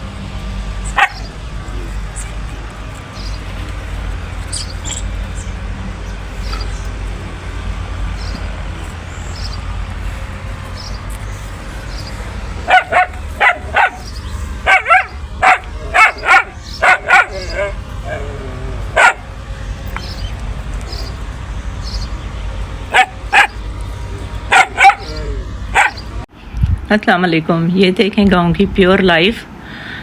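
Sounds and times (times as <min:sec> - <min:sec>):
dog barking: 0:00.9 - 0:01.3, 0:12.6 - 0:19.4, 0:22.9 - 0:23.6, 0:24.2 - 0:26.1.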